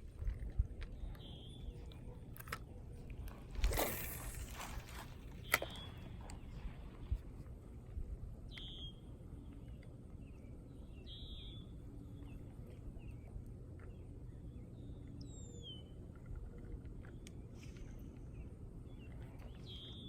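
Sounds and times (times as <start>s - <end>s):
wind rumbling on microphone: 0.0s - 14.6s
bird chirping: 0.9s - 2.2s, 8.5s - 12.4s.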